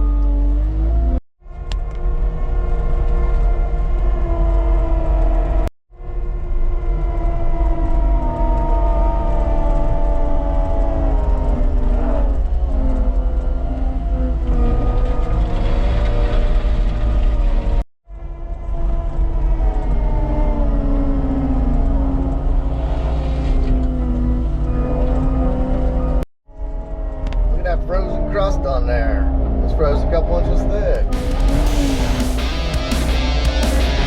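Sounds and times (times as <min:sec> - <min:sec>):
hydraulic whine: 0:31.1 - 0:34.0.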